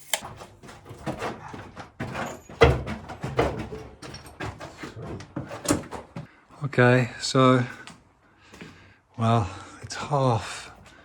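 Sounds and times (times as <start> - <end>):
wood and tools clattering: 0.0 - 6.3.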